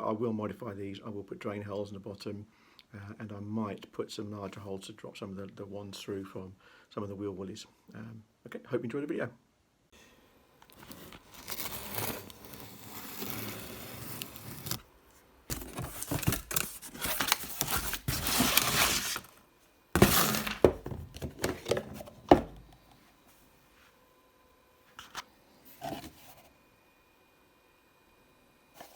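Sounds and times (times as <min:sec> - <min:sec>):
packaging rustling and tearing: 0:10.7 - 0:14.9, 0:15.5 - 0:19.4, 0:20.0 - 0:22.6.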